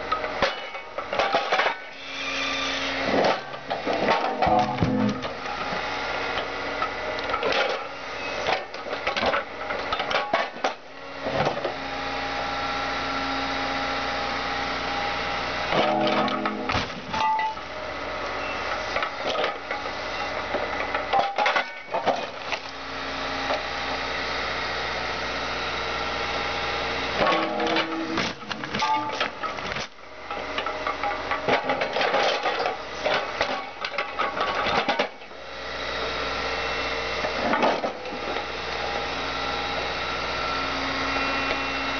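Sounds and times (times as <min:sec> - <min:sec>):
excavator engine and hydraulics: 0:00.0 - 0:41.9
car body crunching and banging: 0:03.2 - 0:05.4, 0:15.7 - 0:17.5.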